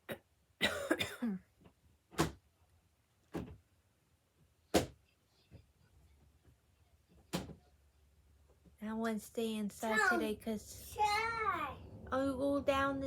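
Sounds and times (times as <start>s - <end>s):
person speaking: 9.4s - 13.0s.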